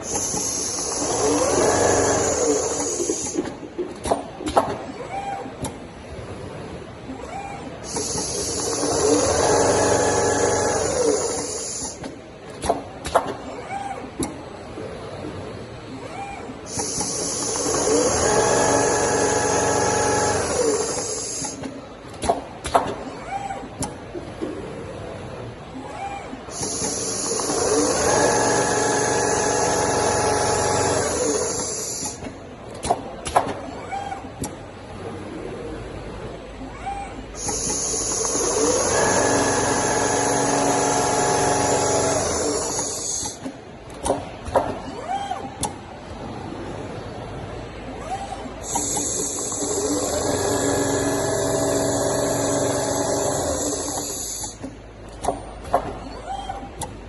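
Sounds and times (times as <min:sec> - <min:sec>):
sewing machine motor whine: 0:00.1 - 0:03.4, 0:07.9 - 0:12.0, 0:16.8 - 0:21.6, 0:26.5 - 0:32.2, 0:37.4 - 0:43.4, 0:48.6 - 0:54.6.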